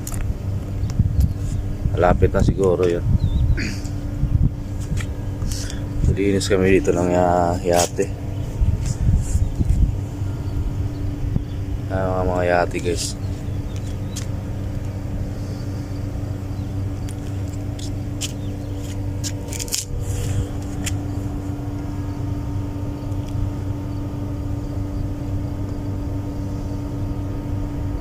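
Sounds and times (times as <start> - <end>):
low machine hum: 0.0 - 28.0.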